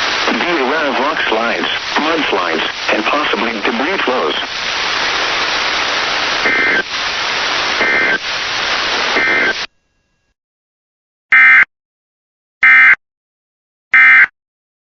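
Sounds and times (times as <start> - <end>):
radio static hiss: 0.0 - 9.7
warbling data tone bursts: 6.4 - 6.9, 7.8 - 8.2, 9.1 - 9.7.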